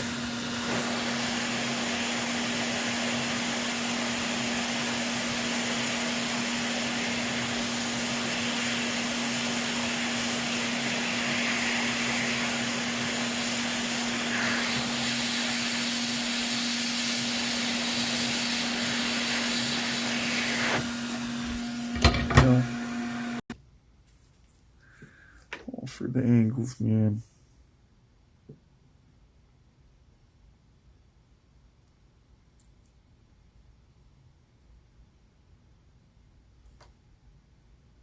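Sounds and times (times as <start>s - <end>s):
desoldering pump hissing: 0.0s - 23.4s.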